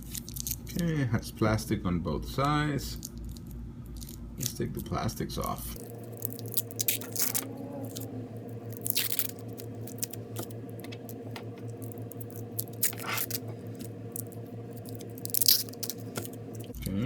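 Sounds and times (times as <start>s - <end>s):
plastic film crinkling: 5.8s - 16.8s.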